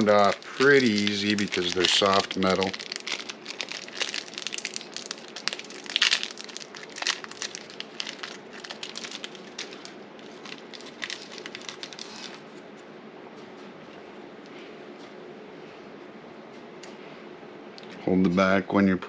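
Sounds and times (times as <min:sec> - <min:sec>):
plastic packaging crinkling: 0:00.0 - 0:12.6.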